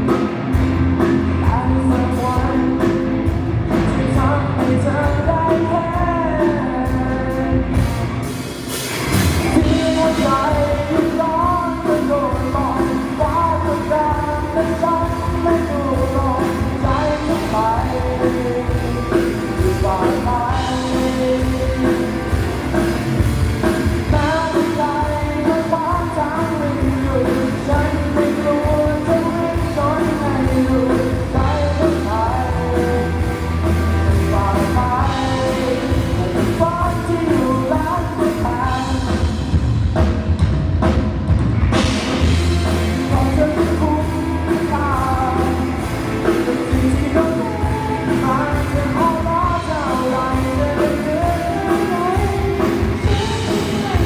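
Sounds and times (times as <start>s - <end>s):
rock song over loudspeakers: 0.0s - 54.0s.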